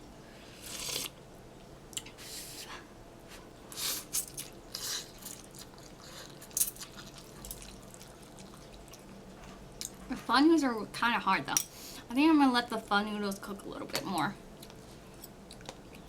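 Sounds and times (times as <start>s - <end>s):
person eating and chewing: 0.6s - 1.2s, 3.7s - 10.1s, 14.5s - 16.0s.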